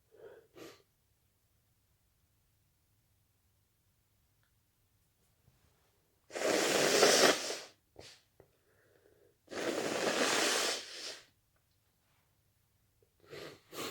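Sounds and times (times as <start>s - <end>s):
sniff: 0.1s - 0.9s, 6.3s - 11.3s, 13.2s - 13.9s.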